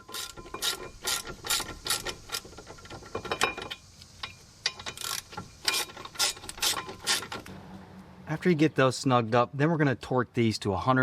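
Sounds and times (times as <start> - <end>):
ratchet wrench clicking: 0.0 - 7.3.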